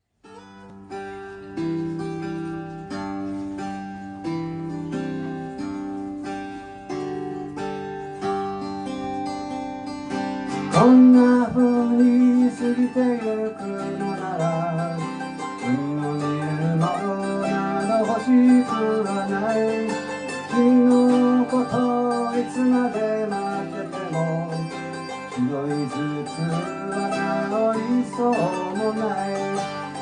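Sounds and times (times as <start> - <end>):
acoustic guitar strumming chords: 0.2 - 30.0
sliding wavering melody line: 10.7 - 30.0.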